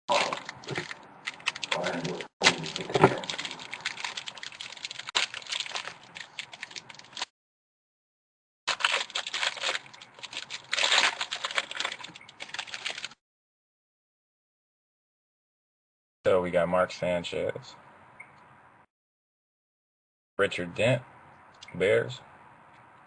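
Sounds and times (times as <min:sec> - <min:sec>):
crinkling of card packaging: 0:00.1 - 0:07.3, 0:08.7 - 0:13.2.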